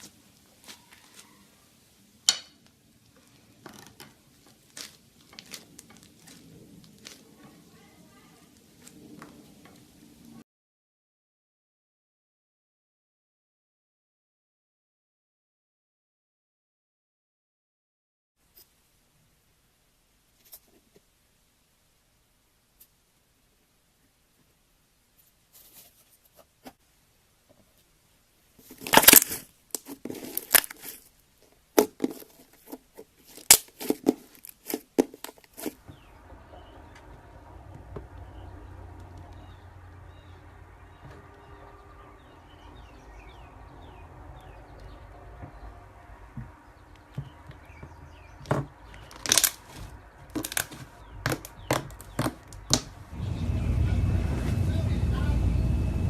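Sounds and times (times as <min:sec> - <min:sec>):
slime popping and crackling: 0:03.8 - 0:07.7, 0:28.7 - 0:31.0, 0:33.2 - 0:35.8, 0:48.9 - 0:53.0
low rumble: 0:35.8 - 0:47.5, 0:52.9 - 0:56.0.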